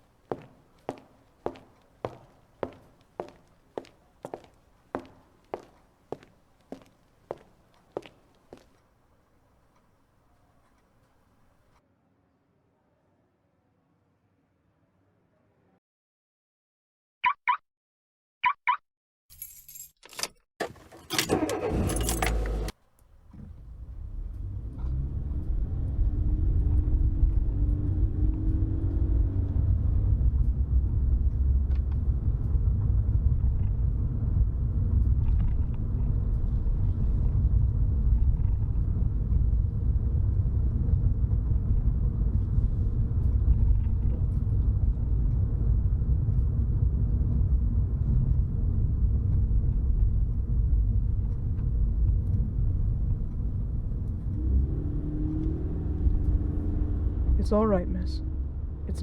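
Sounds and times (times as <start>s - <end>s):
car engine pulling away: 21.1s - 57.4s.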